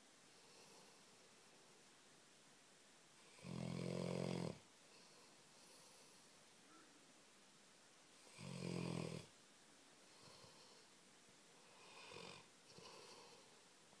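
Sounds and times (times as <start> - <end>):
dog snoring: 3.2 - 4.6, 8.2 - 9.3, 11.6 - 13.5.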